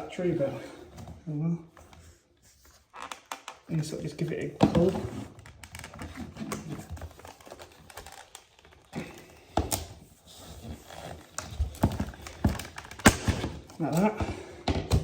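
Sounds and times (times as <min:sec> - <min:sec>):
plastic parts clicking and knocking: 0:04.6 - 0:10.1, 0:10.7 - 0:15.0.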